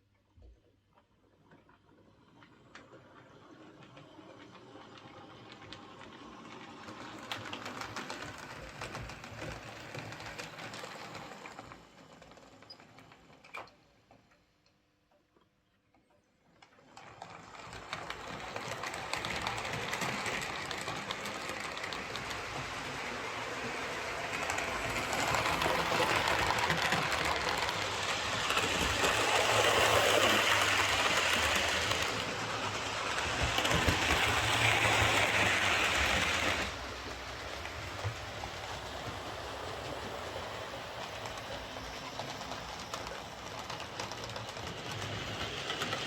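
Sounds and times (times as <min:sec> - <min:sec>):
wheels running on rails: 0:02.2 - 0:13.7, 0:16.6 - 0:46.0
model train motor whirring: 0:17.2 - 0:46.0.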